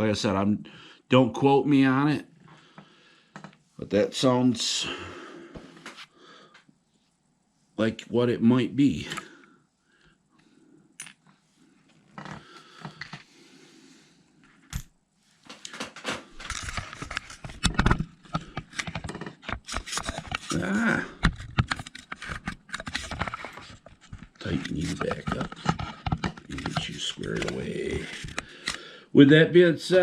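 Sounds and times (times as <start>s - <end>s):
plastic and metal parts clicking: 15.5s - 20.6s, 21.2s - 28.8s.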